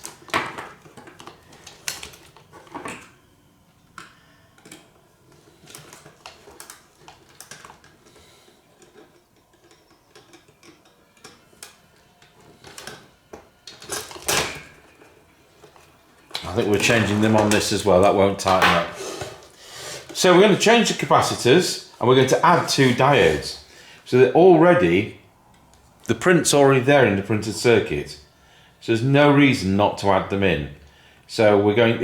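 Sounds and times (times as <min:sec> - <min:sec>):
hand tools clicking on metal: 0:05.8 - 0:13.0.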